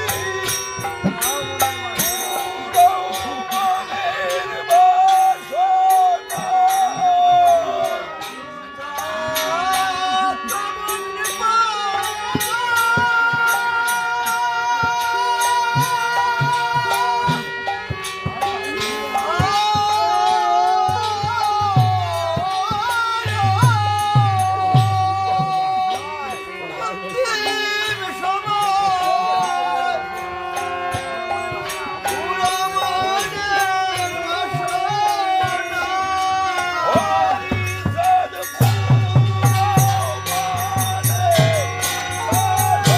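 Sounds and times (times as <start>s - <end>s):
drum beats: 0.0s - 42.9s
metallic percussion strokes: 0.0s - 42.9s
drum strokes: 30.6s - 42.9s.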